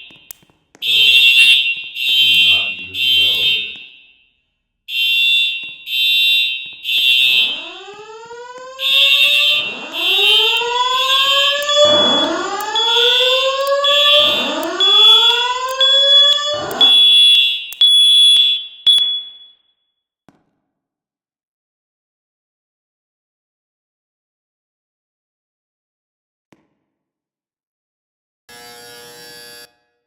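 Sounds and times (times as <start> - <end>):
high-pitched pulsing alarm tone: 0.8 - 19.5
rising whoop alarm tone: 7.0 - 17.4.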